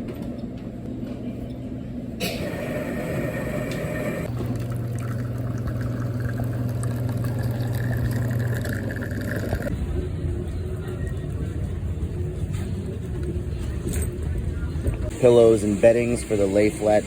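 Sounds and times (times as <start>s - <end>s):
steady low hum: 0.0s - 16.4s
liquid pouring: 4.3s - 9.7s.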